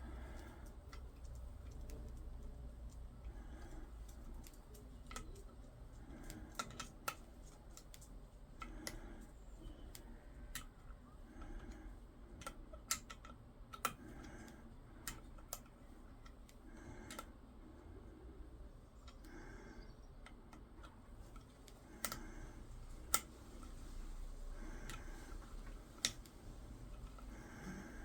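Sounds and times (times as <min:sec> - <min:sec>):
small metal parts clicking: 0:12.4 - 0:14.2.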